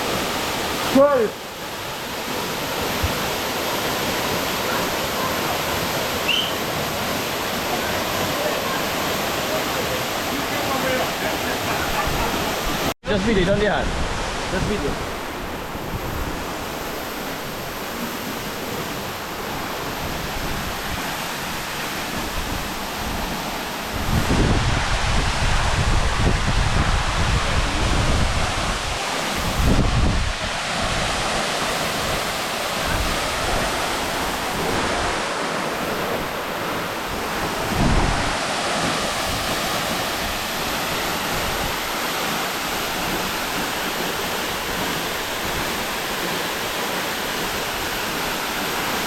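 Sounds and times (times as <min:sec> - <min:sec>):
waterfall roaring: 0:00.0 - 0:49.0
wind buffeting microphone: 0:22.1 - 0:31.4, 0:37.0 - 0:41.9.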